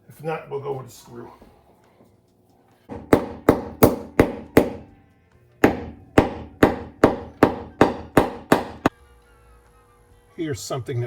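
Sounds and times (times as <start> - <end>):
hammer striking carpet tack: 2.9 - 4.9, 5.6 - 8.9.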